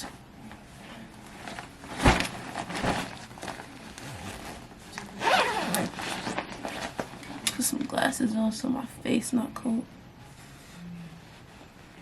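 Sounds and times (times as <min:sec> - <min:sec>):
clothing rustling: 0:00.0 - 0:07.4.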